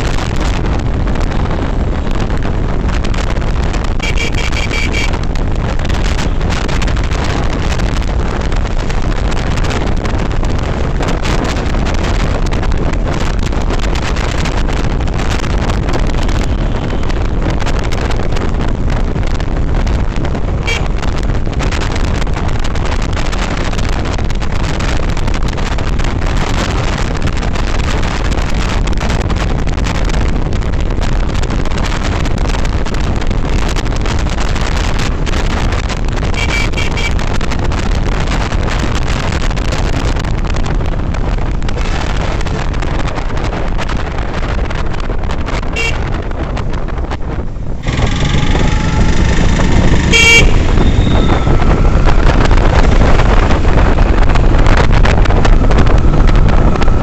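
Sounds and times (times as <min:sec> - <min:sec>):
motorcycle road noise: 0:00.0 - 0:57.0
wind rushing over microphone: 0:00.0 - 0:57.0
vehicle horn toots: 0:04.0 - 0:05.2, 0:20.6 - 0:20.9, 0:36.4 - 0:37.2, 0:45.7 - 0:46.2, 0:47.8 - 0:52.3.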